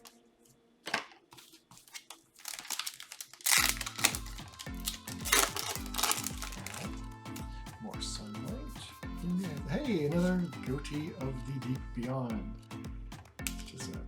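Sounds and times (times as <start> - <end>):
foil wrapper crinkling and tearing: 1.3 - 7.5
background music with low beat: 3.5 - 14.0.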